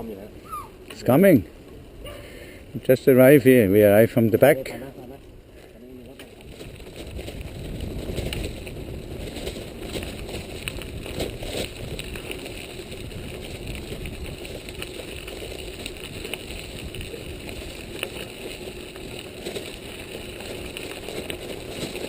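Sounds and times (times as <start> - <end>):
bike tyres rumbling: 0.0 - 22.0
bike rattling and clicking: 0.8 - 22.0
wind on microphone: 6.4 - 22.0.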